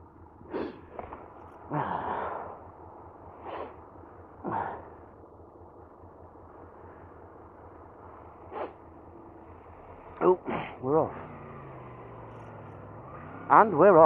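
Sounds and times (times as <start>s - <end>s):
motorcycle engine idling: 0.0s - 14.0s
person breathing and sighing: 0.5s - 2.7s, 4.4s - 5.2s.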